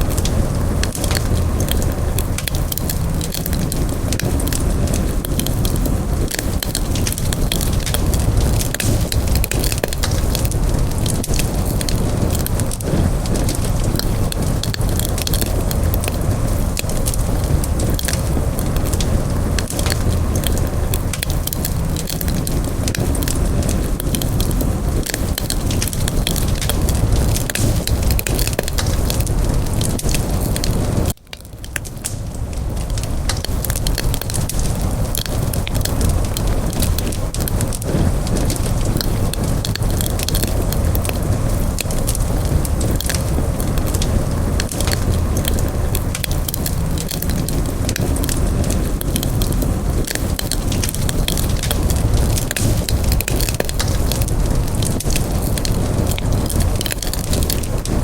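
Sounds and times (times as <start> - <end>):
burning wood crackling: 0.0 - 58.0
low rush of flame: 0.0 - 58.0.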